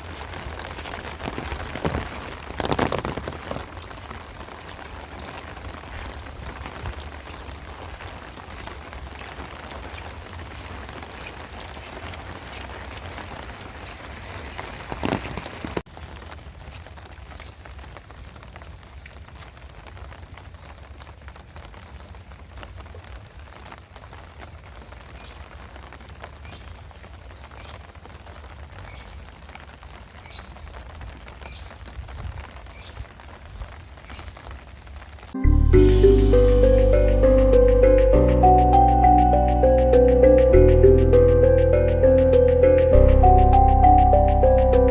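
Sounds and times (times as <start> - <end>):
heavy rain: 0.0 - 44.9
drips ticking: 6.1 - 15.2.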